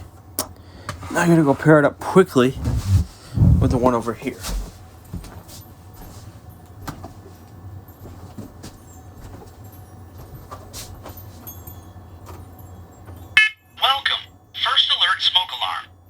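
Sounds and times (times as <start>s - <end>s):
steady low hum: 0.4s - 6.8s.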